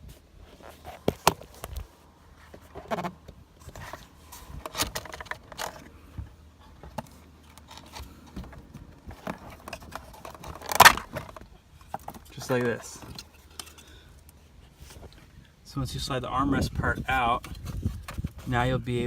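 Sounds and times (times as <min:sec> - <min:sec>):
plastic trim clicks and creaks: 0:06.8 - 0:14.4.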